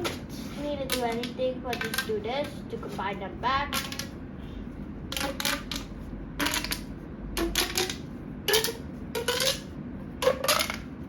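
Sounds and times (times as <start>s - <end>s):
plastic pop tubes popping: 5.1s - 10.9s.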